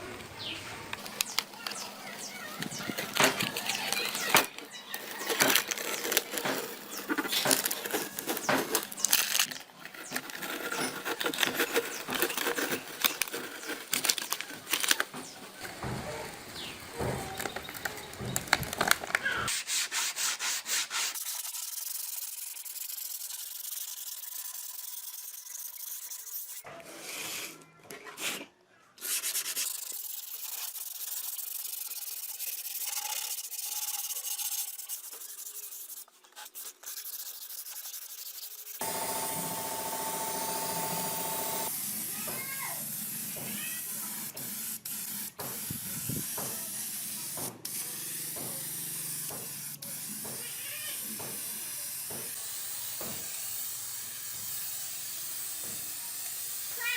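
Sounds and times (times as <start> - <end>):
clicks and small chirps: 1.0 - 15.3
sandpaper rubbing on wood: 2.2 - 15.6, 19.2 - 27.5, 29.0 - 56.8.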